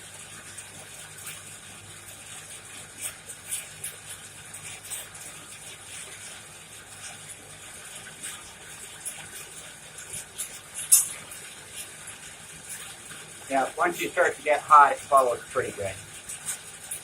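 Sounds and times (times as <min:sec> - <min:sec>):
fire popping and crackling: 0:08.2 - 0:17.0.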